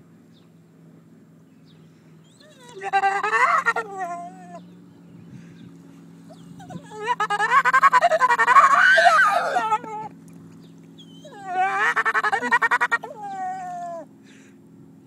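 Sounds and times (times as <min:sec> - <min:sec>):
dog howling: 0:02.4 - 0:04.7, 0:06.3 - 0:10.1, 0:11.0 - 0:14.1.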